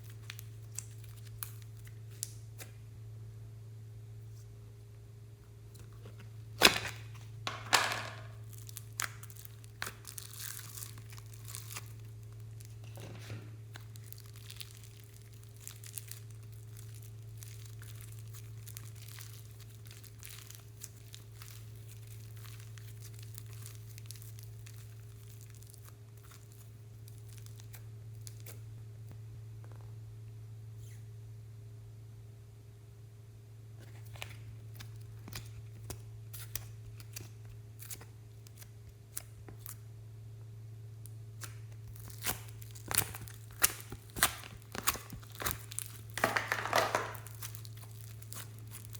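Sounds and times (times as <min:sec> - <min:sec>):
slime crackling and popping: 0:00.0 - 0:02.8, 0:08.2 - 0:13.0, 0:13.7 - 0:28.6, 0:41.1 - 0:48.9
steady low hum: 0:00.0 - 0:48.9.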